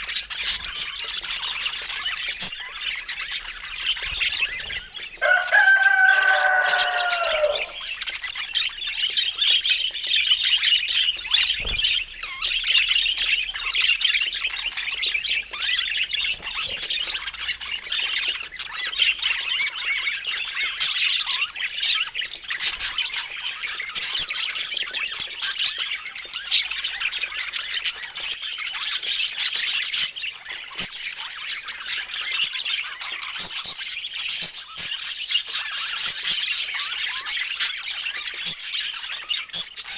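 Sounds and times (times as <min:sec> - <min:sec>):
budgerigars chattering and warbling: 0:00.0 - 0:39.9
budgerigar call sliding down in pitch: 0:05.2 - 0:07.8.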